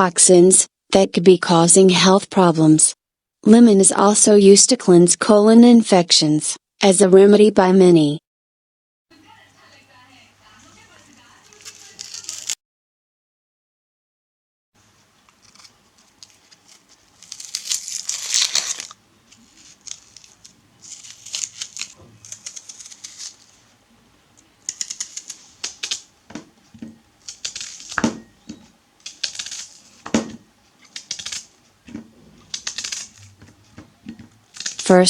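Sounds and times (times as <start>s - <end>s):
onion skin crackling and scraping: 11.4s - 12.6s, 14.8s - 35.0s.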